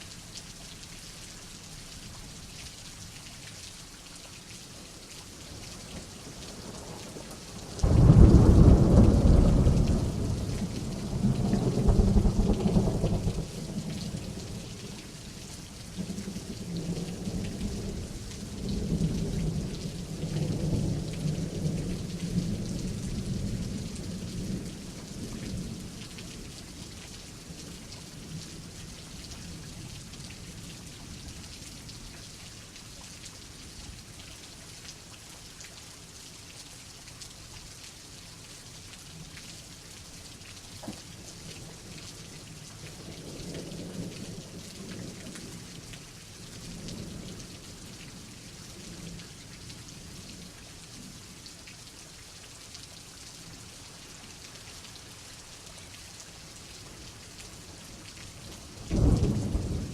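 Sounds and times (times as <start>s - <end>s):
steady rain falling: 0.0s - 59.9s
low rumble of thunder: 6.0s - 15.2s, 15.9s - 26.6s, 58.4s - 59.9s.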